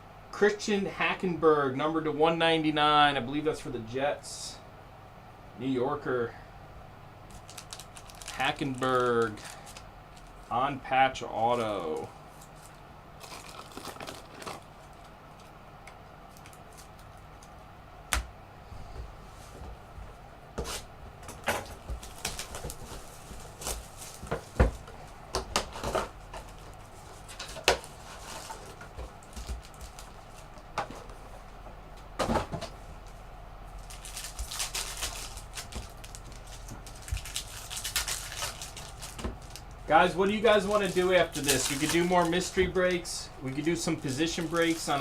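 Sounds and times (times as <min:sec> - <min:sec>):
faint low hum: 0:00.0 - 0:45.0
trading cards and packaging handled: 0:07.3 - 0:10.5, 0:11.5 - 0:15.6, 0:16.3 - 0:17.6, 0:21.6 - 0:31.2, 0:33.8 - 0:45.0.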